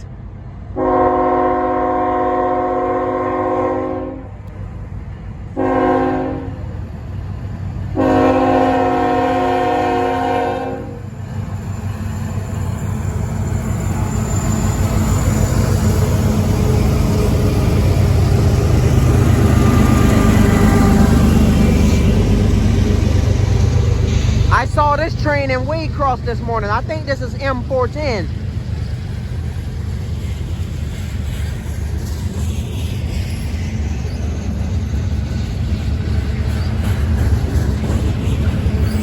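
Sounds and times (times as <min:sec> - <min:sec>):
train rumble and rail noise: 0:00.0 - 0:39.0
locomotive air horn blasts: 0:00.8 - 0:04.2, 0:05.6 - 0:06.5, 0:08.0 - 0:11.0.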